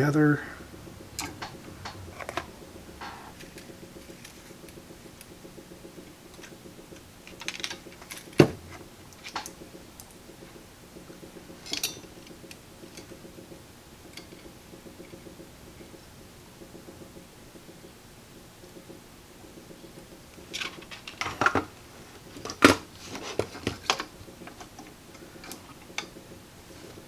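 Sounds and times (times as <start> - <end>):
steady low hum: 0.0 - 27.0
tools and wires clicking: 9.1 - 10.2, 11.6 - 13.2.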